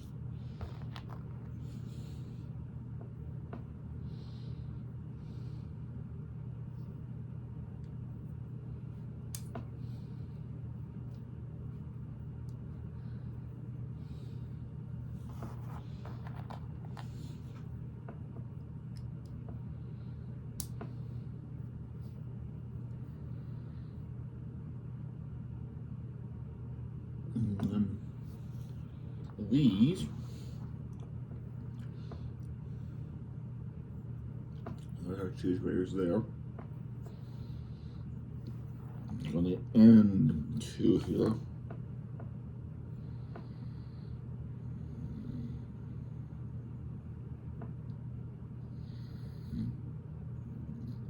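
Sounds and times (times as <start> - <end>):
steady low hum: 0.0 - 51.0.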